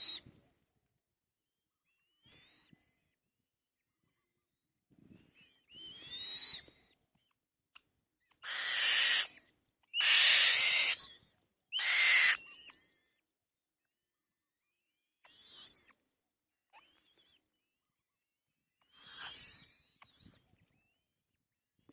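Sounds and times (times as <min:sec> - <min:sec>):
nestling birds begging screeches: 0:08.4 - 0:09.4, 0:10.0 - 0:12.4.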